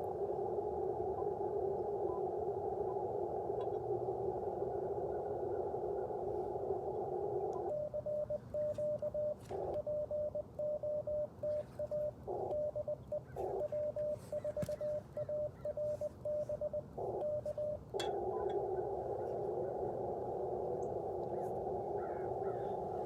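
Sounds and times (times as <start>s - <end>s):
radio band hiss: 0.0s - 23.0s
morse code tone: 7.0s - 23.0s.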